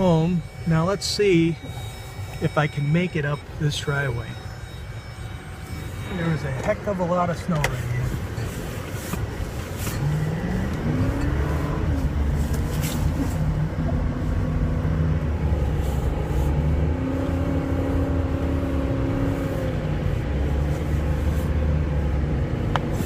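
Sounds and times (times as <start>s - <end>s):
car engine pulling under load: 5.6s - 23.0s.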